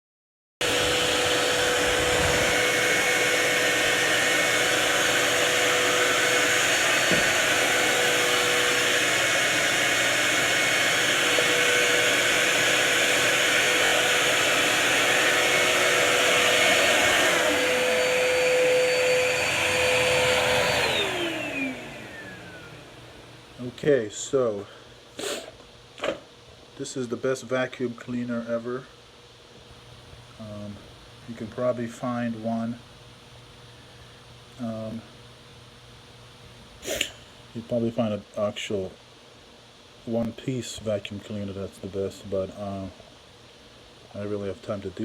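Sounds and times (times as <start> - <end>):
vacuum cleaner running: 0.6 - 26.2, 33.5 - 35.2.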